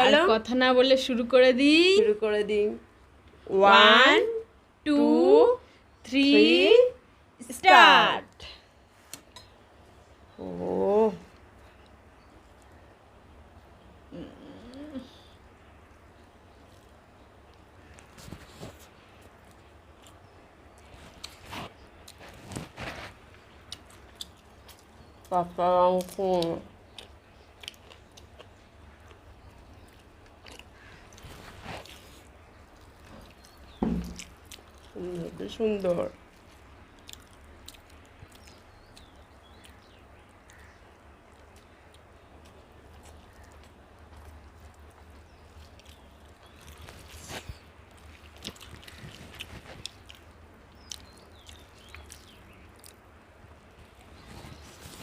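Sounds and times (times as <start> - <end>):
person chewing food: 16.5 - 25.2, 26.0 - 35.0, 36.2 - 53.2.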